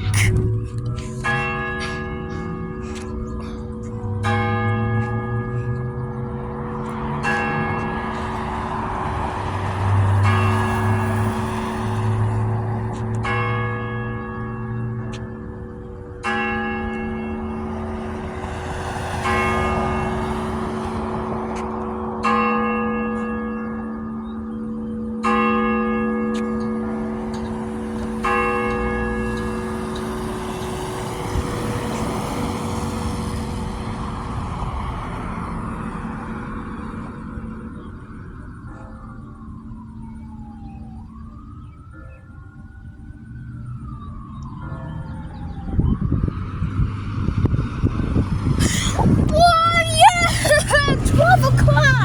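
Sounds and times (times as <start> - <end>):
road traffic passing: 0.0 - 41.9, 42.5 - 52.0
church bell tolling: 1.2 - 31.4.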